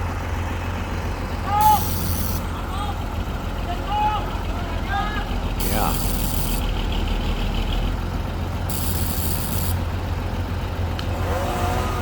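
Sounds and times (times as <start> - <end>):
crane engine idling: 0.0 - 12.0
high hiss: 5.6 - 6.6, 8.7 - 9.8.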